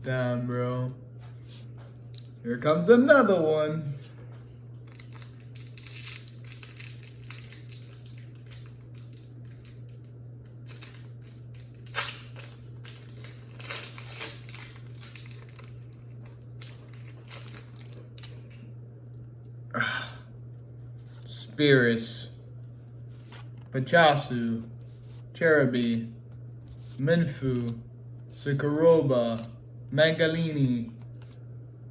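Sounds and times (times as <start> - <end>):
steady low hum: 0.0 - 31.9
foil wrapper crinkling and tearing: 4.7 - 18.7.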